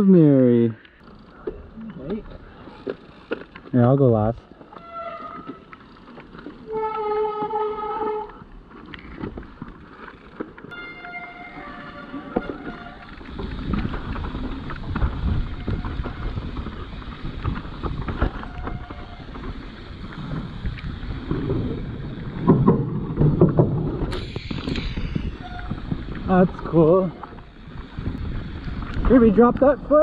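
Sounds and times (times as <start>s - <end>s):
bike tyres rumbling on dirt: 1.0s - 30.0s
bicycle freehub buzzing: 10.0s - 23.2s, 24.0s - 30.0s
wind on the microphone: 12.7s - 19.5s, 20.3s - 30.0s
knocks and rattles: 21.3s - 26.2s.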